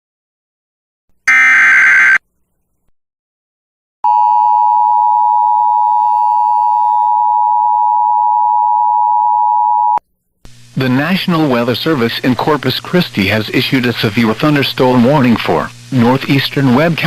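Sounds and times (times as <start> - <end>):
two-tone attention signal: 1.3 - 2.2.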